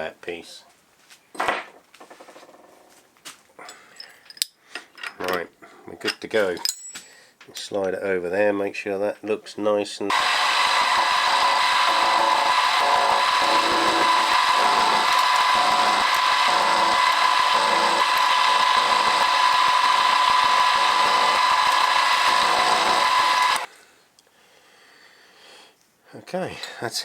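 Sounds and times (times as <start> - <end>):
milling machine motor whine: 10.1 - 23.7.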